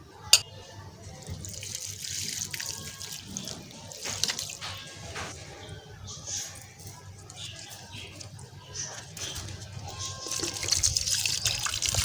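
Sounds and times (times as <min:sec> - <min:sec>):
water running from a tap: 0:01.1 - 0:05.2, 0:09.2 - 0:12.0.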